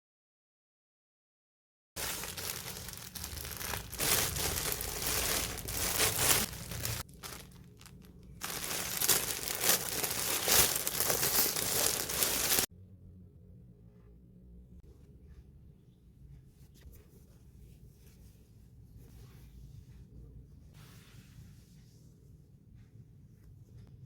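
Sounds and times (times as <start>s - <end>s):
plastic packaging crinkling: 2.0s - 12.7s.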